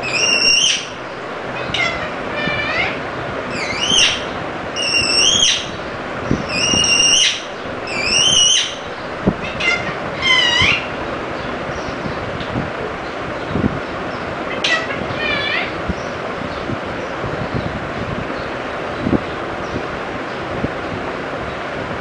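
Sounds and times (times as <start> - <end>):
parrot harsh calls: 0.0 - 11.0, 14.5 - 15.8.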